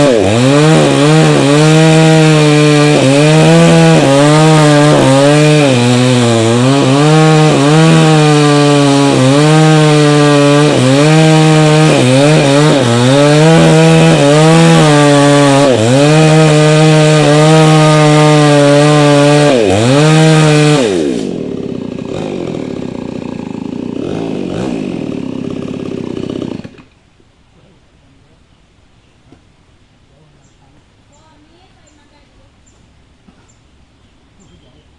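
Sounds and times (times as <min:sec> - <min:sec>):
chainsaw cutting wood: 0:00.0 - 0:26.9
chainsaw idling: 0:00.0 - 0:26.9.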